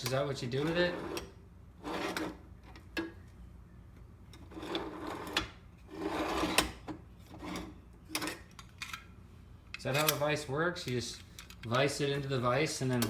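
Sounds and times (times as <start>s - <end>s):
vise parts rubbing and sliding: 1.8s - 2.4s.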